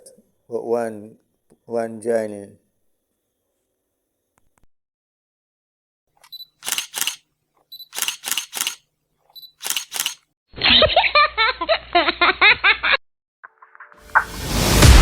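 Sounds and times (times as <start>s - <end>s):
camera shutter clicks: 6.2s - 7.2s, 7.8s - 8.8s, 9.5s - 10.2s
music: 13.5s - 15.0s.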